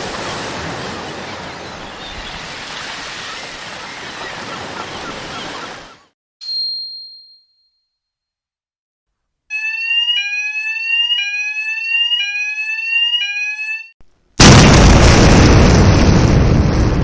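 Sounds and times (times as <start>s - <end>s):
high ding: 6.4s - 8.3s
electronic alarm rising tone: 9.5s - 14.0s.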